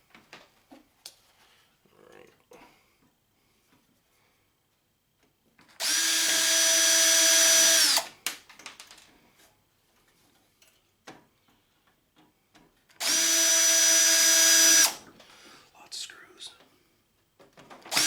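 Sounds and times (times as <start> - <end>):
power drill whirring: 5.8 - 8.1, 13.0 - 15.1.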